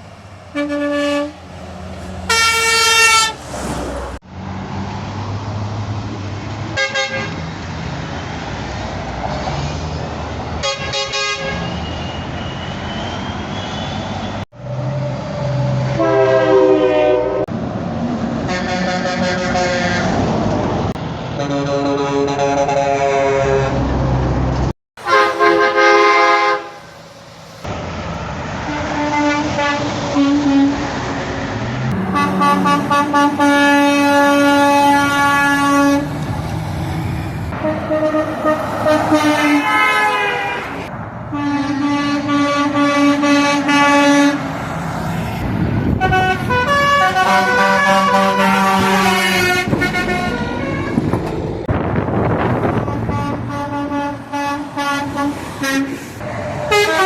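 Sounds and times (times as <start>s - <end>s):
passing truck road noise: 0.0s - 57.0s
truck air horn blasts: 0.5s - 3.5s, 6.7s - 7.4s, 10.6s - 14.0s, 15.9s - 17.5s, 18.4s - 20.2s, 21.4s - 23.8s, 25.0s - 27.6s, 28.6s - 30.9s, 31.9s - 36.2s, 37.5s - 44.5s, 45.9s - 51.2s, 52.7s - 57.0s.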